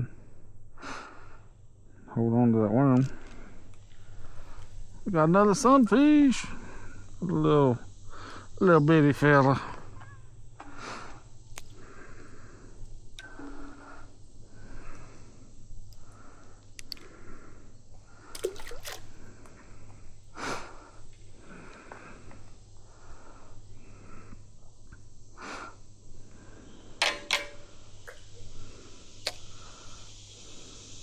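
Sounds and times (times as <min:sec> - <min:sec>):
insects calling: 0:00.0 - 0:31.0
sharp clicks and knocks: 0:27.0 - 0:28.3.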